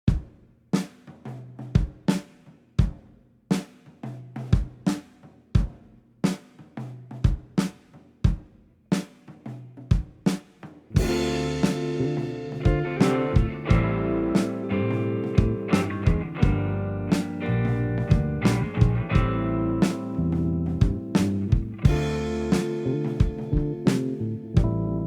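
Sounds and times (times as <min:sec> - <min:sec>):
drum kit beat: 0:00.0 - 0:24.8
band with guitars: 0:11.0 - 0:24.8.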